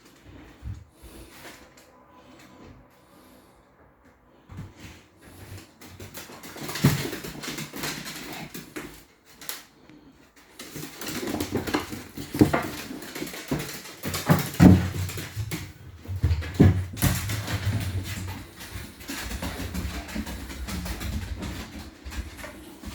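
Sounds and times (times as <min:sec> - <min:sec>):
dogs clattering and knocking: 0:05.2 - 0:09.6, 0:10.4 - 0:22.9.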